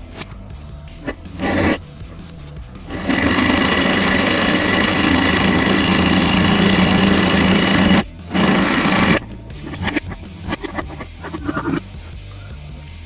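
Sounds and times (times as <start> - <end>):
handheld power tool running: 1.0 - 1.8, 2.8 - 11.8.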